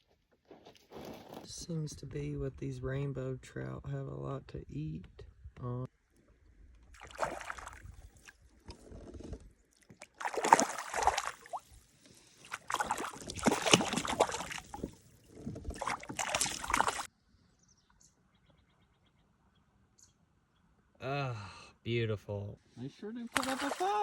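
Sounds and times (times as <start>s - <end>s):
water splashing from thrashing fish: 7.0s - 8.4s, 9.8s - 17.1s, 23.4s - 24.0s.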